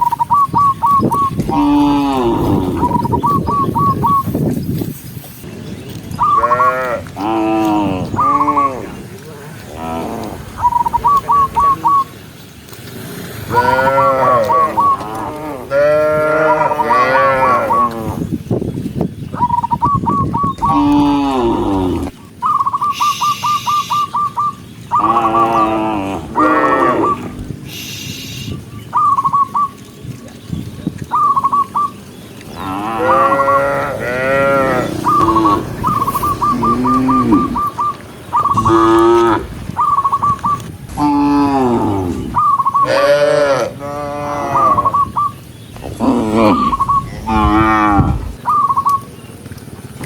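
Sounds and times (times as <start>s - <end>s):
cattle mooing: 1.4s - 3.2s, 6.2s - 11.5s, 13.5s - 18.3s, 20.6s - 22.2s, 25.0s - 27.4s, 32.5s - 37.8s, 38.4s - 39.7s, 40.9s - 45.0s, 45.8s - 48.4s
short high trilling calls: 22.4s - 25.8s, 26.4s - 29.8s, 34.7s - 40.7s, 42.1s - 43.1s, 44.6s - 49.1s.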